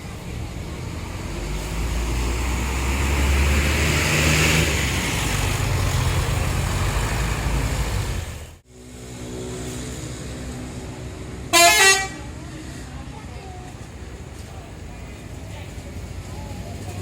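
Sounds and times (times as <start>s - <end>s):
bus diesel engine rumble: 0.0s - 17.0s
steady engine hum: 0.0s - 17.0s.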